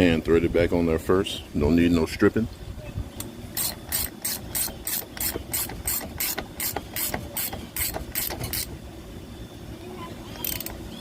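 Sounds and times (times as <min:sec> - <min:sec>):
ratchet wrench clicking: 0:03.6 - 0:08.7, 0:10.4 - 0:10.8.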